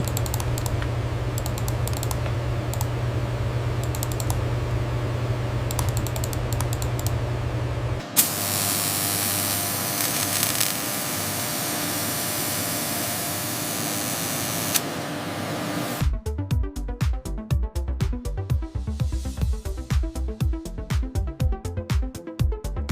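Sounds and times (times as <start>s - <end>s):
rapid machine clicking: 0.0s - 3.0s, 3.7s - 4.5s, 5.6s - 7.3s
machinery humming: 0.0s - 16.0s
steady hiss of air or spray: 8.2s - 14.8s
music with steady beat: 16.0s - 22.9s.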